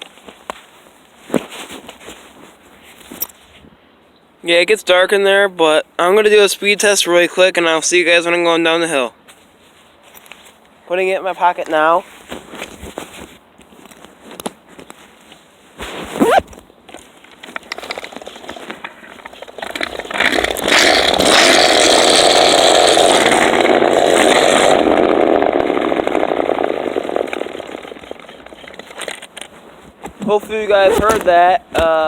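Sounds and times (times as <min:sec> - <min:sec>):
knocks and rubs in pocket: 0:00.0 - 0:03.7, 0:09.2 - 0:10.8, 0:11.4 - 0:22.5, 0:27.5 - 0:32.0
scooter wheels rattling on pavement: 0:16.2 - 0:29.6.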